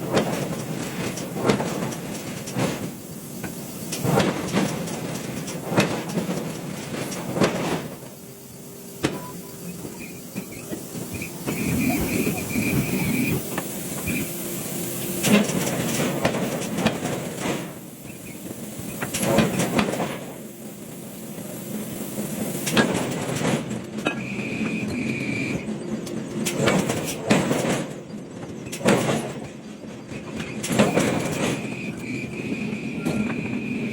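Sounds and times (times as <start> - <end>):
continuous machine noise: 0.0 - 33.9
high steady whine: 1.4 - 16.6.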